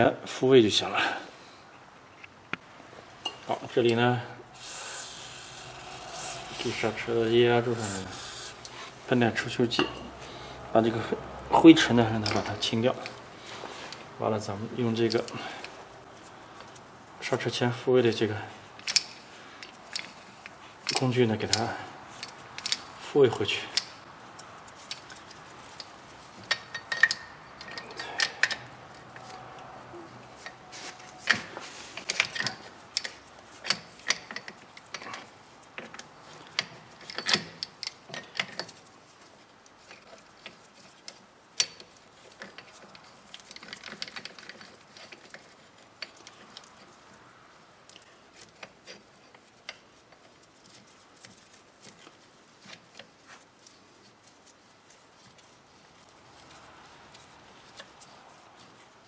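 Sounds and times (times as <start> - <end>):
metal clicks and knocks of tool: 23.7 - 29.3.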